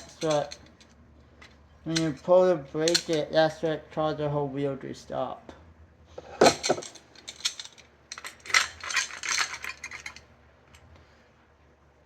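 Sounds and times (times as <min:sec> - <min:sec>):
metal parts clinking and rattling: 0:00.0 - 0:03.3, 0:06.4 - 0:10.3.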